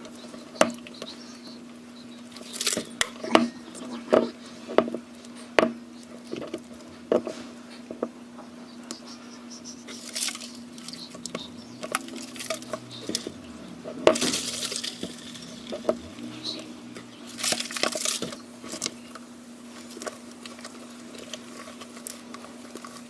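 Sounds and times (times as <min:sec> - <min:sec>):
steady low hum: 0:00.0 - 0:23.0
rustling: 0:09.8 - 0:23.0.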